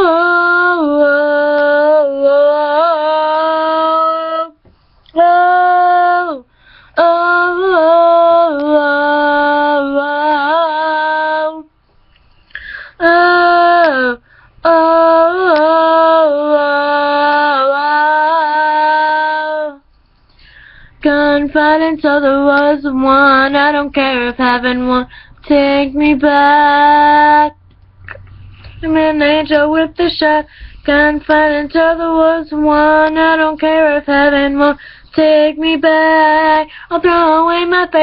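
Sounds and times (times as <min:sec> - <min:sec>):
woman singing unaccompanied: 0:00.0 - 0:11.7, 0:12.9 - 0:19.9, 0:21.0 - 0:38.0.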